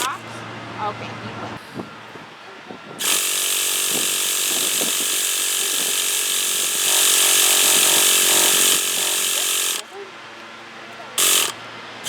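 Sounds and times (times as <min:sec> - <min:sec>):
electric starter whirring: 0:00.0 - 0:00.4, 0:01.8 - 0:10.0, 0:11.2 - 0:11.6.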